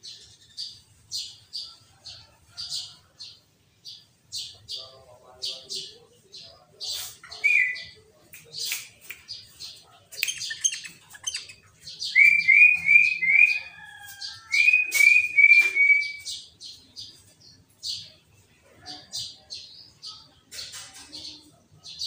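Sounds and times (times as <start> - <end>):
bird singing sharp high chirps: 10.2 - 16.8
bird slurred whistles: 12.2 - 13.7, 14.6 - 16.3.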